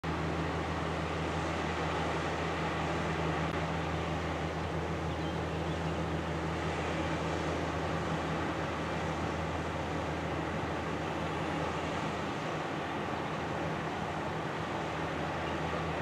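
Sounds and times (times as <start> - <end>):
ship engines drone: 0.0 - 16.0.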